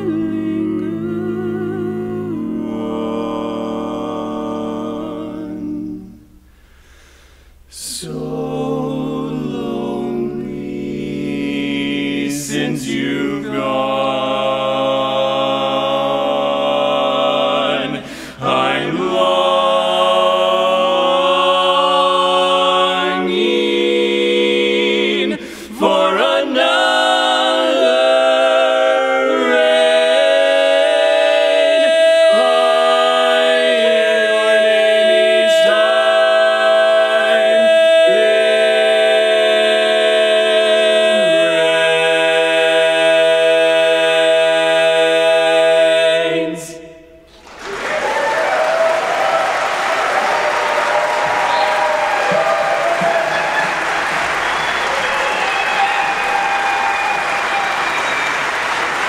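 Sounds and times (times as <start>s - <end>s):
male quartet singing a cappella: 0.0s - 6.6s, 7.7s - 47.2s.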